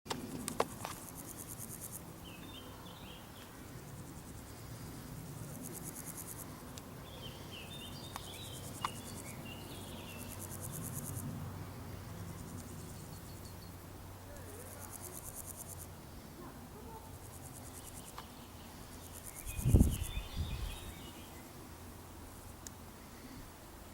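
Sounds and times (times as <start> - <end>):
crickets chirping: 0.2 - 23.6
birds chirping: 6.6 - 11.1, 11.9 - 21.5.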